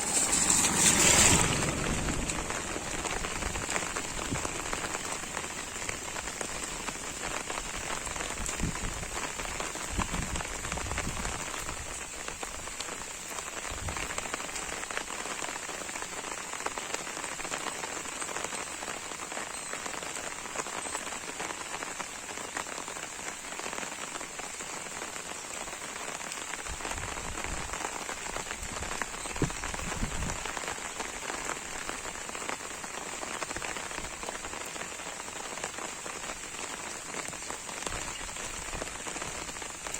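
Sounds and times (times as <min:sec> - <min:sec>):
rain pattering on an umbrella: 0:00.0 - 0:39.9.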